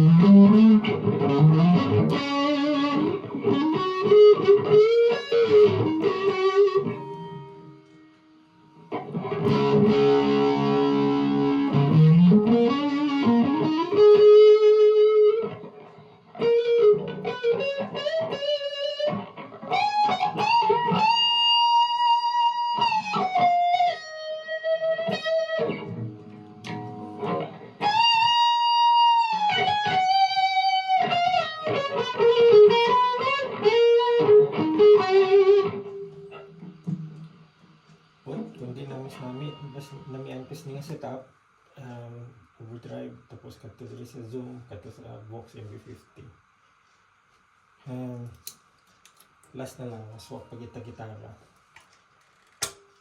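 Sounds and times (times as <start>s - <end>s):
overdriven electric guitar: 0.0s - 40.3s.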